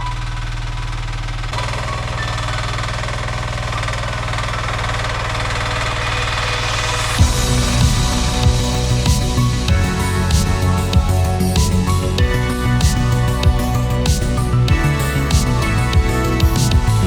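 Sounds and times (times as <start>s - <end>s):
music: 5.9s - 17.0s.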